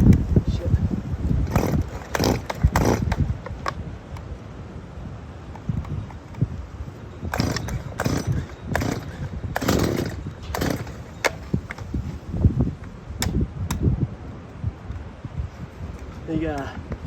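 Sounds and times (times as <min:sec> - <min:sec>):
rattles and sharp clicks: 0:01.3 - 0:04.3, 0:07.2 - 0:12.2
chainsaw recoil starter pulls: 0:01.4 - 0:04.3, 0:07.2 - 0:12.2.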